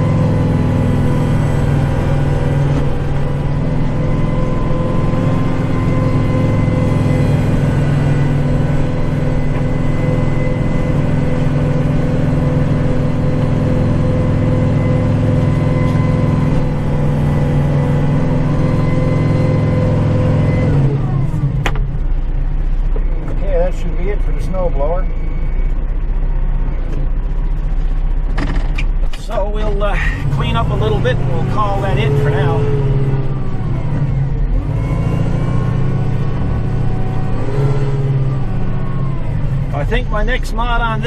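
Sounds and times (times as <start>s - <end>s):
snowblower whine: 0.0s - 21.5s, 29.9s - 39.7s
tractor diesel engine running: 0.0s - 41.0s.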